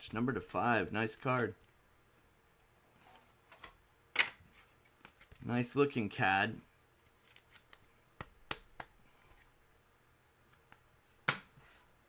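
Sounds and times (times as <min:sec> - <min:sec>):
cards clicking being handled: 0:07.2 - 0:09.4.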